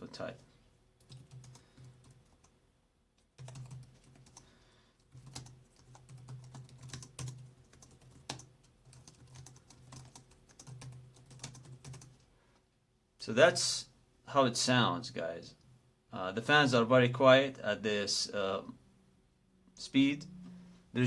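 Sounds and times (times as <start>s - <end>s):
laptop keyboard typing: 1.0s - 2.5s, 3.3s - 12.2s.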